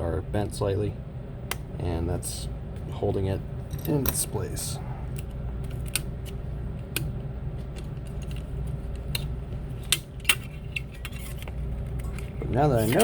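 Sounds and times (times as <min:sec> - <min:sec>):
metal tools clicking and tapping: 0:03.7 - 0:04.3.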